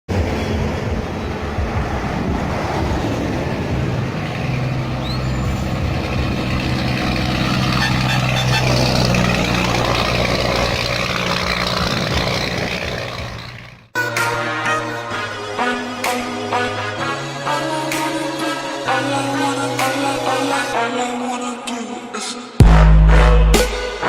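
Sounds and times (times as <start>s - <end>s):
truck diesel engine rumbling: 0.1s - 14.0s.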